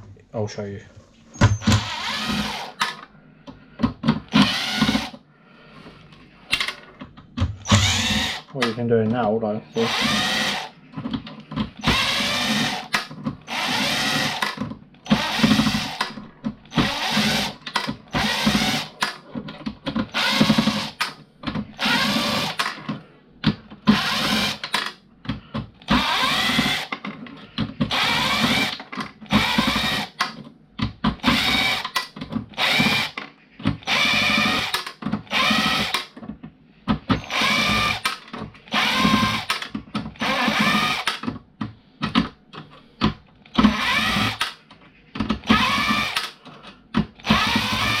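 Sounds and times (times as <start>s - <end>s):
drill running in short bursts: 7.7s - 8.5s, 9.8s - 10.7s, 43.7s - 44.4s, 45.5s - 46.2s, 47.2s - 48.0s.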